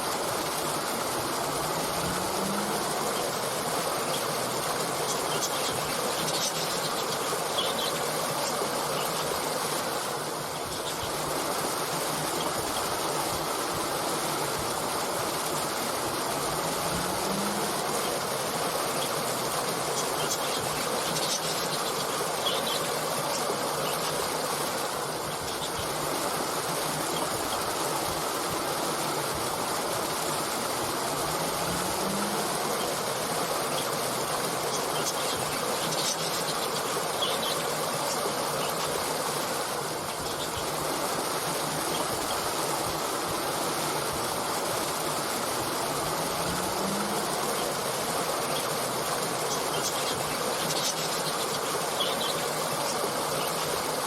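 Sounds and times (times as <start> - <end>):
water stream flowing: 0.0 - 54.0.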